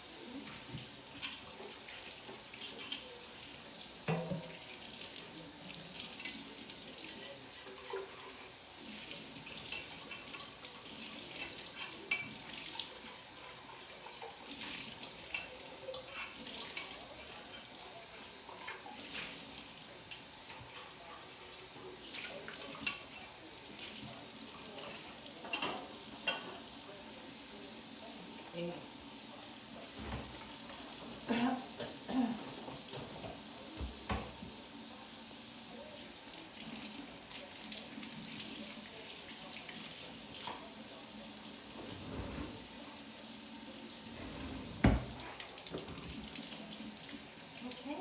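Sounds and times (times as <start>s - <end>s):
tap water running into sink: 0.2s - 48.0s
dishes clinking: 22.2s - 23.4s, 24.8s - 26.7s, 30.0s - 34.6s.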